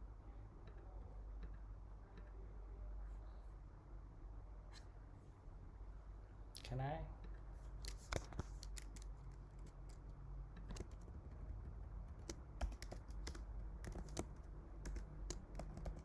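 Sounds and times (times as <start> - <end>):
low steady hum: 0.0 - 16.0
computer keyboard typing: 7.8 - 16.0.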